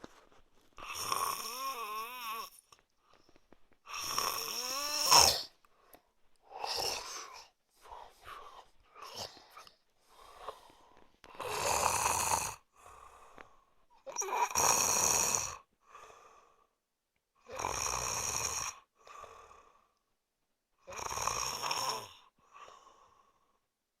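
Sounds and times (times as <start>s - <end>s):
man snoring: 0.8s - 2.6s, 3.9s - 5.5s, 6.5s - 7.4s, 11.3s - 12.7s, 14.1s - 15.7s, 17.4s - 19.6s, 20.8s - 22.8s.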